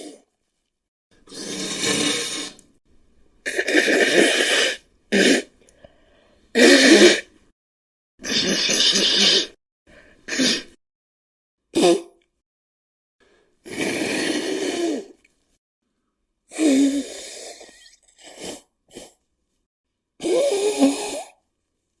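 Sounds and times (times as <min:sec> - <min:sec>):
person sniffing: 0:01.2 - 0:02.6, 0:03.5 - 0:07.3, 0:08.2 - 0:10.8, 0:13.2 - 0:15.2, 0:16.5 - 0:19.2, 0:20.2 - 0:21.4
person blowing nose: 0:01.3 - 0:02.6, 0:03.5 - 0:05.5, 0:06.6 - 0:07.3, 0:08.2 - 0:09.6, 0:10.3 - 0:10.8, 0:11.8 - 0:12.1, 0:13.6 - 0:15.2, 0:16.5 - 0:19.2, 0:20.2 - 0:21.4.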